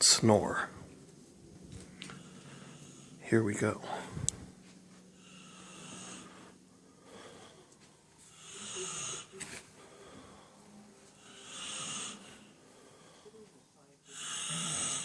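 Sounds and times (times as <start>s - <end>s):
man snoring softly: 2.0s - 4.1s, 5.1s - 15.0s.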